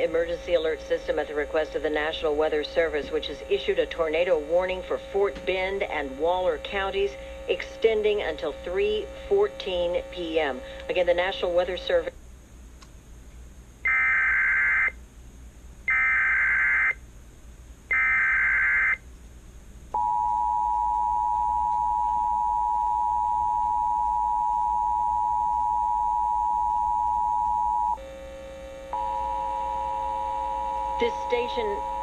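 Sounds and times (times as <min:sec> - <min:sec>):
two-tone attention signal: 0:28.9 - 0:32.0.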